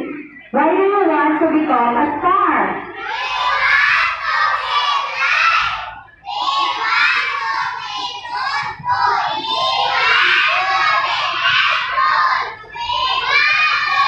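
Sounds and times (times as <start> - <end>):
children singing: 3.0 - 14.0.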